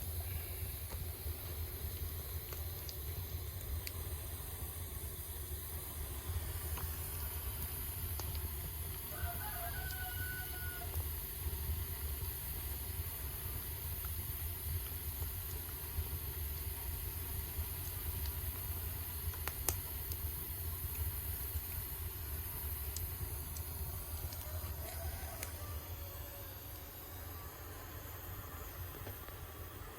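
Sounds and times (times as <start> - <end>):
fire and steam rumbling hiss: 0.0 - 29.9
fire crackling pops: 0.0 - 29.9
rooster crowing: 9.1 - 11.0, 24.3 - 27.5.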